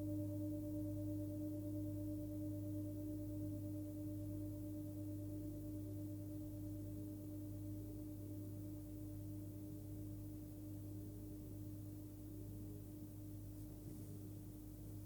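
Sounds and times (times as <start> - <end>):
singing bowl ringing: 0.0 - 12.0.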